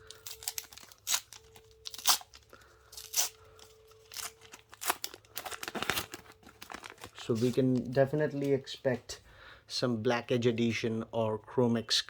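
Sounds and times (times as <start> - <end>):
wrapper tearing open: 0.0 - 8.0
wrapper crinkling: 0.0 - 8.7.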